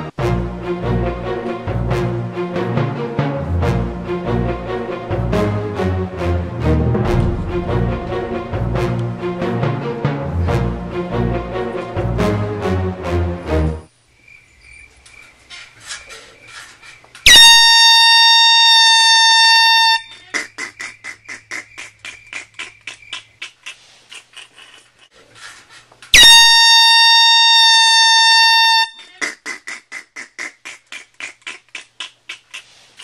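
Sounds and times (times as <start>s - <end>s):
air horn blasts: 17.3s - 20.2s, 26.2s - 29.0s.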